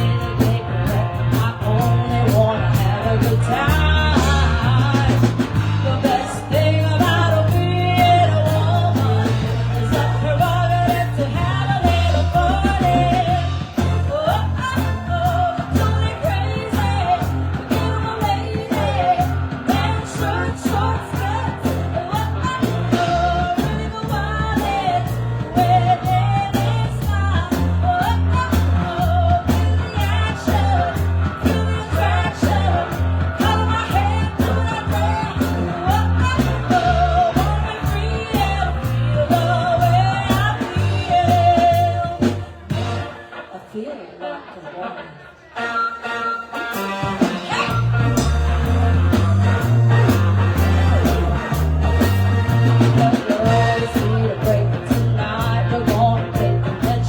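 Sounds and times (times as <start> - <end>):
bass line: 0.0 - 43.4, 46.5 - 57.0
person singing: 0.0 - 57.0
rock band playing: 0.0 - 57.0
drum beat: 47.1 - 55.1.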